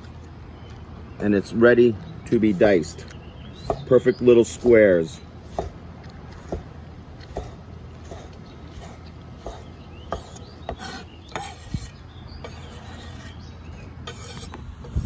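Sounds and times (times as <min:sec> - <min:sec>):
knife scraping: 0:07.2 - 0:15.0.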